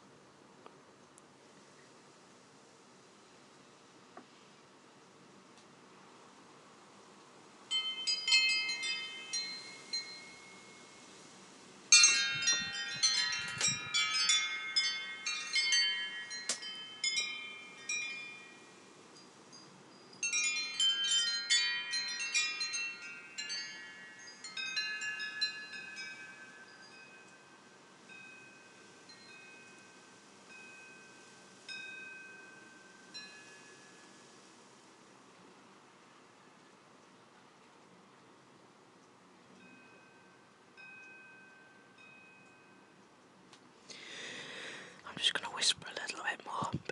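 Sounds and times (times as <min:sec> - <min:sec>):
wind chimes ringing: 0:07.7 - 0:11.1, 0:11.9 - 0:34.5, 0:39.5 - 0:43.0, 0:43.9 - 0:45.0.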